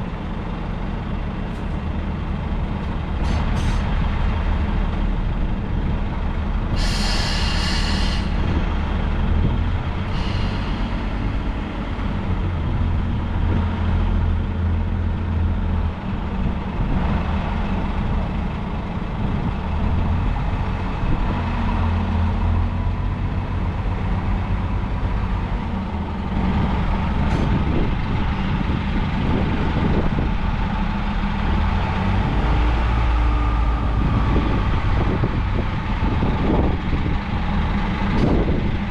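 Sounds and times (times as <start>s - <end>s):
diesel engine rumbling: 0.0s - 38.9s
hiss of air: 6.7s - 8.4s, 10.1s - 11.2s.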